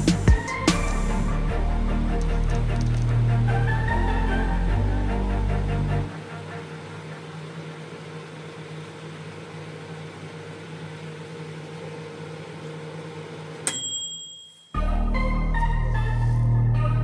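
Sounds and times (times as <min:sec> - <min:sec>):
microwave oven humming: 0:00.0 - 0:16.1
microwave click: 0:13.6 - 0:14.1.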